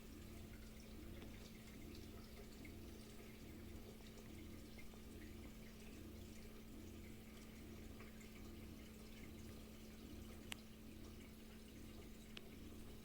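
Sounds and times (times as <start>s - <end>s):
water trickling and dripping: 0.0s - 13.0s.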